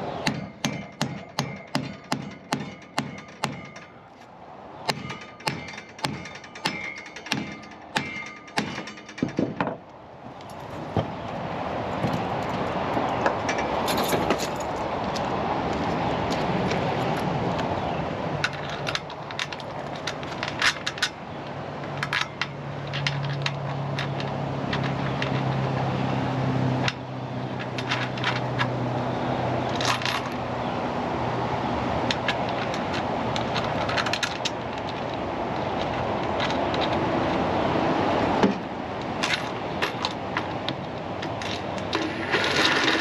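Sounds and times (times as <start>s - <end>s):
metal hardware clinking and scraping: 0.2s - 10.8s, 12.0s - 15.3s, 18.4s - 25.8s, 26.8s - 28.8s, 29.6s - 30.4s, 32.1s - 37.1s, 38.4s - 43.0s.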